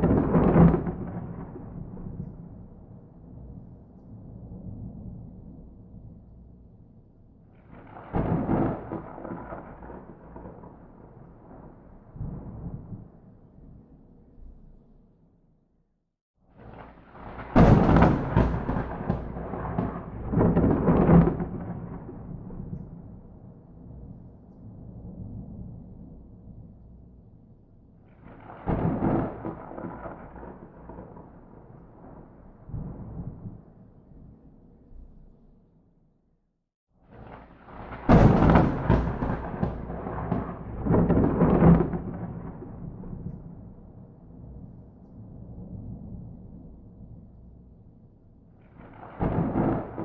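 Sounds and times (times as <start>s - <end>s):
thunder crack and rumble: 0.0s - 6.7s, 7.4s - 14.6s, 16.6s - 27.4s, 28.0s - 35.2s, 37.0s - 47.7s, 48.6s - 50.0s.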